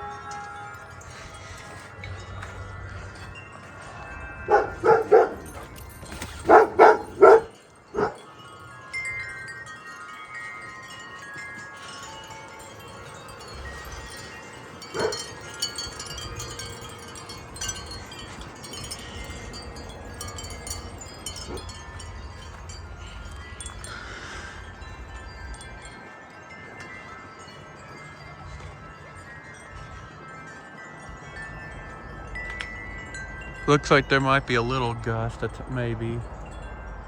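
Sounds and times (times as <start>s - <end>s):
low rumble of wind: 0.0s - 37.0s
wind chimes ringing: 0.0s - 37.0s
dog barking: 4.5s - 5.7s, 6.3s - 8.3s, 14.9s - 15.2s.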